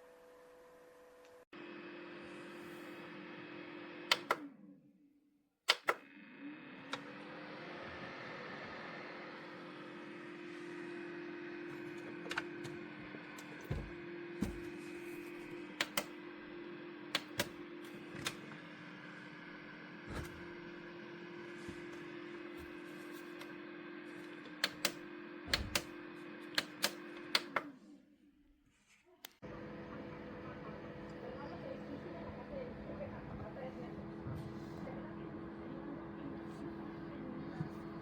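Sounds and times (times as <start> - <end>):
sharp clicks: 4.1 - 4.5, 5.7 - 6.1, 15.8 - 16.1, 17.1 - 17.6
dehumidifier humming: 6.3 - 27.5, 29.4 - 38.0.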